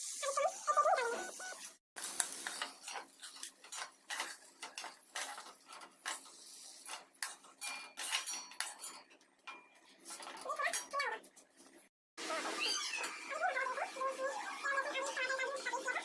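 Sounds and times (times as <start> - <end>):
spoon scraping cooking pan: 1.3 - 11.8.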